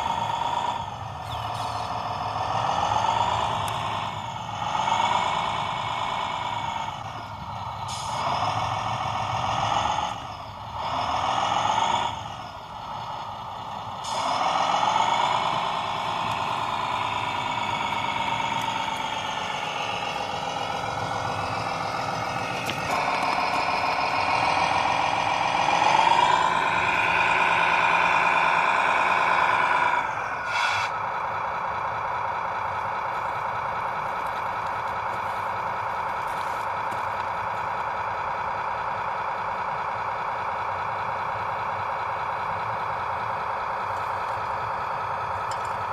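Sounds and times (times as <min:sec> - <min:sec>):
toy truck electric motors whining: 0:00.0 - 0:31.0.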